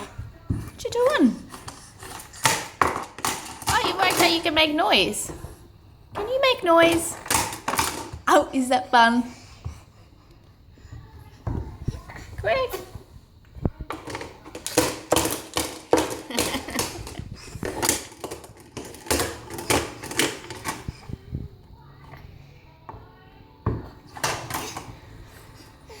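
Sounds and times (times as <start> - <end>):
baby banging toys: 0.0 - 5.5, 6.1 - 8.7, 13.8 - 21.2, 23.7 - 25.2.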